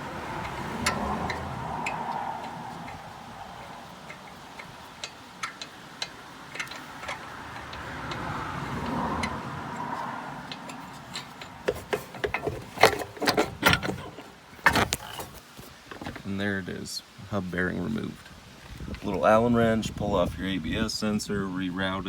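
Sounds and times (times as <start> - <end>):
ratchet clicking: 0.0 - 16.2
metal knocks and clanks: 0.0 - 16.4
metal scraping rub: 0.0 - 16.4.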